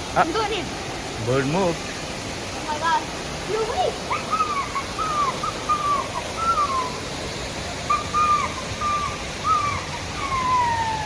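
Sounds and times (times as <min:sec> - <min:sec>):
falling water rushing: 0:00.0 - 0:11.0
bird whistling falling notes: 0:04.3 - 0:07.1, 0:07.9 - 0:11.0.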